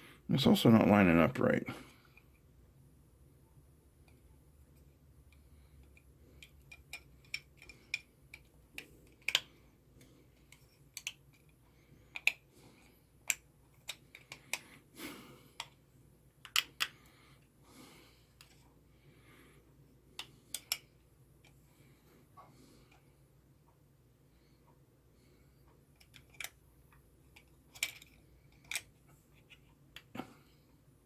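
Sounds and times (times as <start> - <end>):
plastic parts clicking and scraping: 5.3 - 14.7, 18.4 - 18.6, 20.2 - 21.6, 25.9 - 26.6, 27.2 - 30.2.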